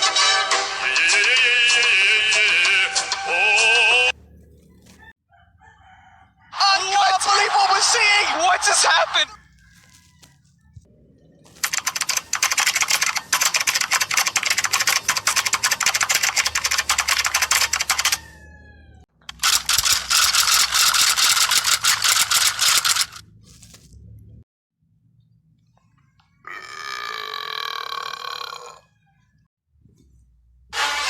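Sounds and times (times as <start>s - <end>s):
dense clatter of quick clicks: 11.6s - 18.2s, 19.3s - 23.2s.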